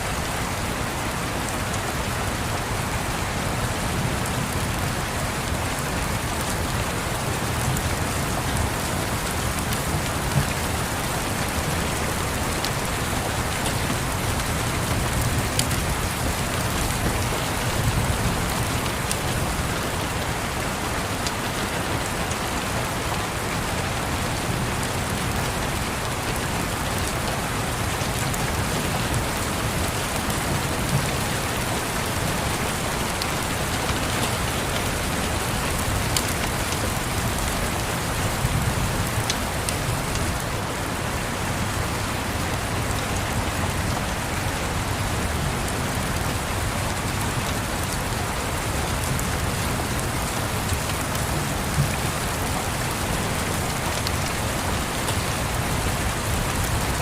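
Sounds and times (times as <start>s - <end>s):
steady rain: 0.0s - 57.0s.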